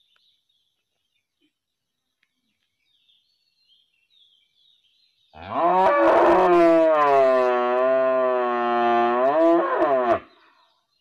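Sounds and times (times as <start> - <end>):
cow mooing: 5.4 - 10.3.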